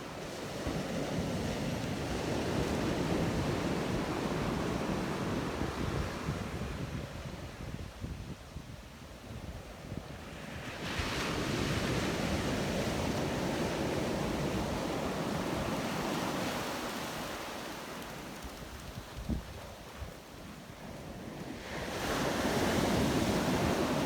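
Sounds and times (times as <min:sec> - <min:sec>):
sea surf washing up beach: 0:10.5 - 0:24.0
wind buffeting microphone: 0:11.4 - 0:20.3.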